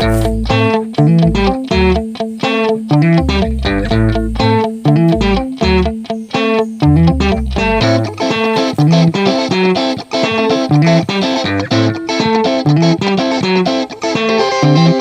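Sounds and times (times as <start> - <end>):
plucked guitar music with beat: 0.0 - 15.0.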